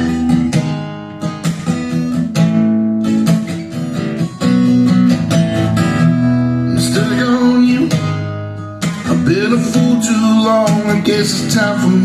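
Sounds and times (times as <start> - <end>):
strummed acoustic guitar chords: 0.0 - 12.0
recorded song with singing: 6.6 - 8.2, 8.9 - 12.0.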